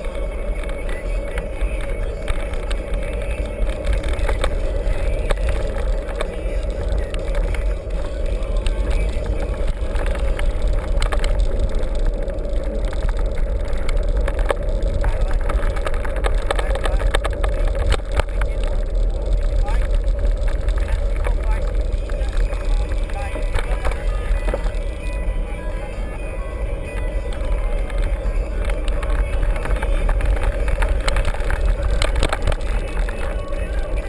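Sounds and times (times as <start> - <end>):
bike rattling and knocking: 0.0 - 34.0
wind rumble on microphone: 0.0 - 34.0.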